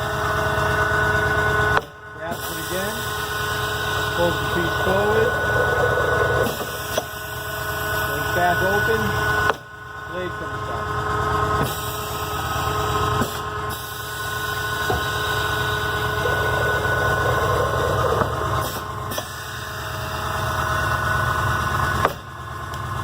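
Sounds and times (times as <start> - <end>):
saw motor hum: 0.0 - 22.2
saw blade cutting metal: 2.4 - 7.4.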